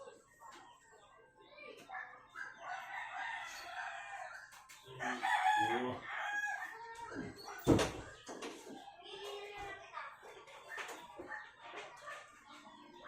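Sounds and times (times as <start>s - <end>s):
rooster crowing: 2.7s - 6.8s.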